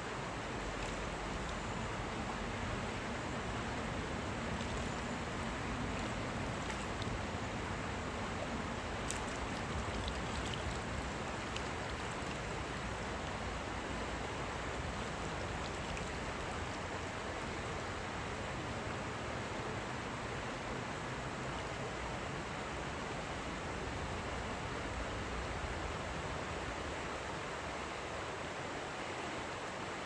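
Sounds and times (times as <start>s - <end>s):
river water rushing: 0.0s - 30.0s
faint small clicks: 9.0s - 10.8s.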